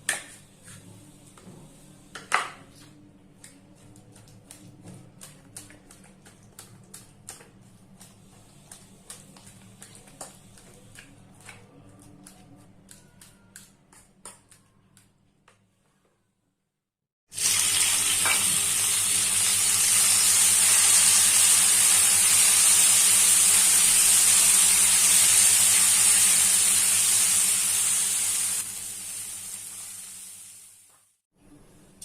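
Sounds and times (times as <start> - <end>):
food sizzling in hot oil: 17.3 - 31.1.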